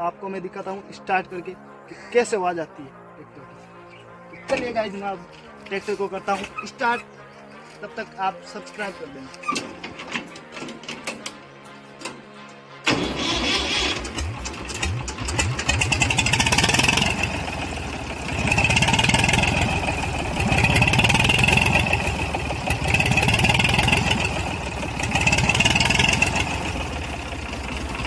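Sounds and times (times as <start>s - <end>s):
tractor diesel engine revving: 12.9s - 28.0s.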